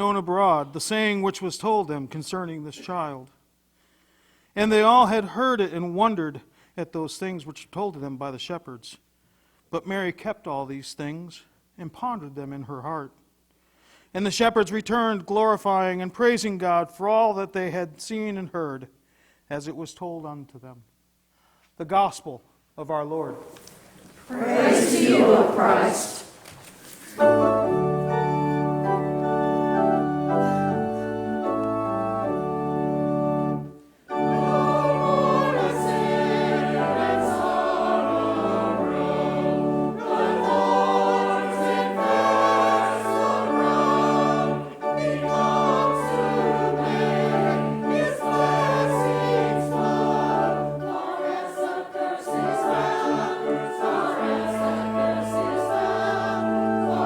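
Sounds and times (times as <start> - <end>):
voices singing a hymn: 23.2 - 26.4, 27.1 - 57.0
church organ chords: 27.2 - 57.0.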